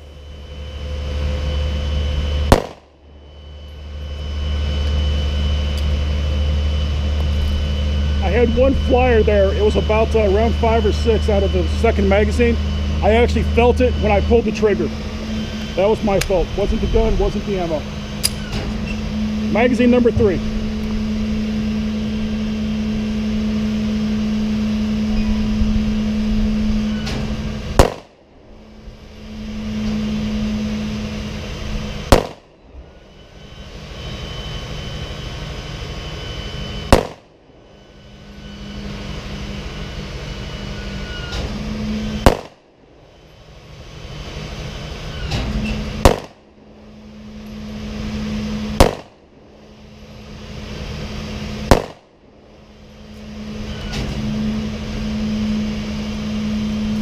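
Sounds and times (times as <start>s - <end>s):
steady low hum: 0.0s - 57.0s
pistol shots: 2.5s - 2.9s, 27.8s - 28.2s, 32.1s - 32.5s, 36.9s - 37.3s, 42.2s - 42.6s, 46.0s - 46.4s, 48.8s - 49.2s, 51.7s - 52.1s.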